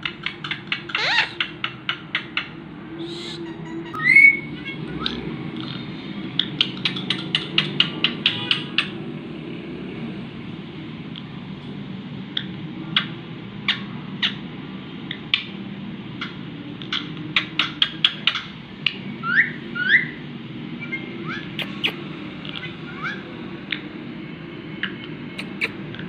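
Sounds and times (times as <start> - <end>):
parrot chirping: 0.0 - 5.2, 20.8 - 22.0, 25.3 - 25.9
parrot rising whistles: 3.0 - 4.6, 25.4 - 25.8.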